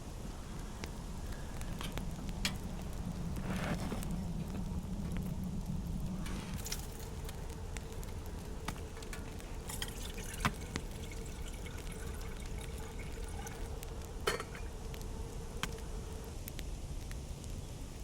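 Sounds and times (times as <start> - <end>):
steady faint tone: 0.0 - 18.0
liquid being poured: 6.2 - 14.9.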